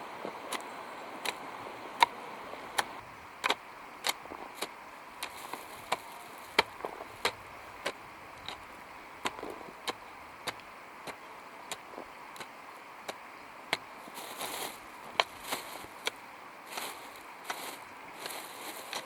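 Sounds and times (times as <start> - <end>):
hand tool chopping: 2.8 - 8.6.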